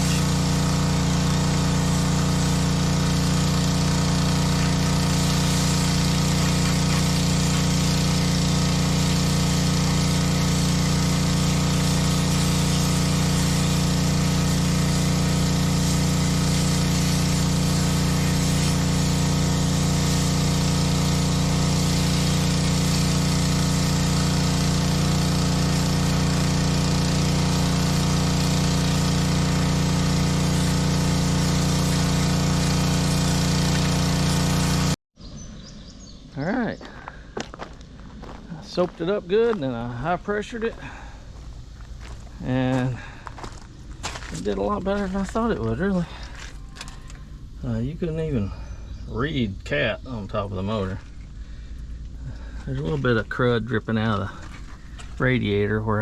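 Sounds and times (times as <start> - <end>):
high-pressure water spray hiss: 0.0 - 35.0
small engine running: 0.0 - 35.0, 40.7 - 47.9, 50.7 - 56.0.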